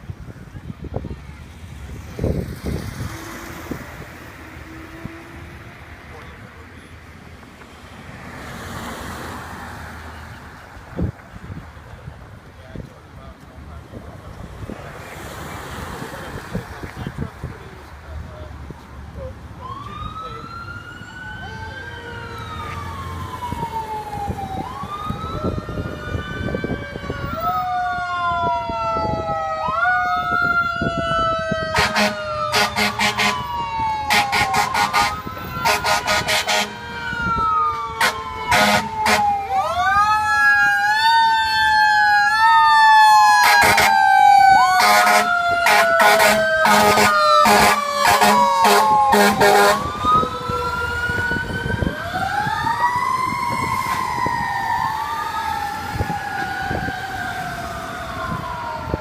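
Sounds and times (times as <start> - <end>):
air horn blasts: 31.7 - 33.5, 34.1 - 37.0, 38.0 - 39.4, 43.4 - 44.1, 44.7 - 50.0.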